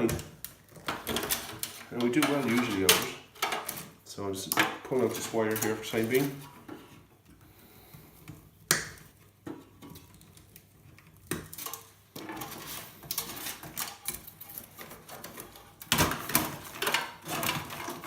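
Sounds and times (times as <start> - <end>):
cables rattling against computer case: 0.0 - 6.8, 11.4 - 18.0.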